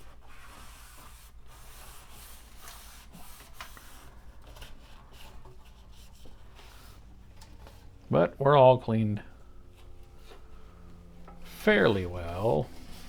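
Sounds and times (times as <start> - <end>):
low steady hum: 3.8 - 13.0
wiping inside metal case: 9.6 - 13.0.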